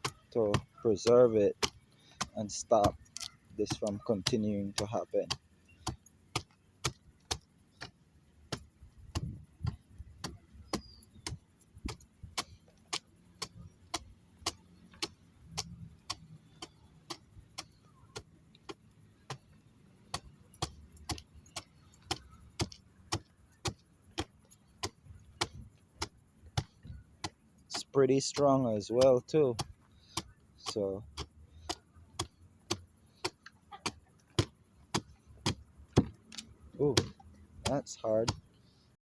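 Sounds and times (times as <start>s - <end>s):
hammer tapping on wood: 0.0s - 19.5s, 20.1s - 38.5s.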